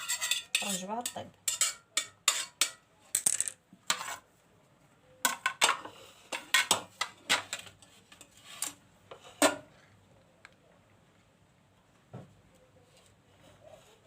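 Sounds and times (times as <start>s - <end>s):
utensils and dishes clinking: 0.0s - 2.8s.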